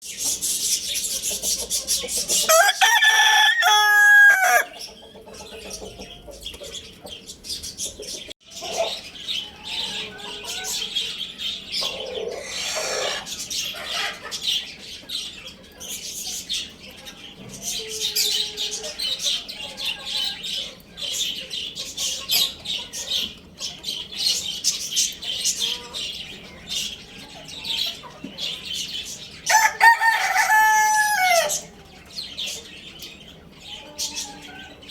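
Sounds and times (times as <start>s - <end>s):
small birds chirping: 0.0s - 2.7s, 4.4s - 34.9s
rooster crowing: 2.5s - 4.7s, 9.4s - 11.2s, 29.5s - 31.7s.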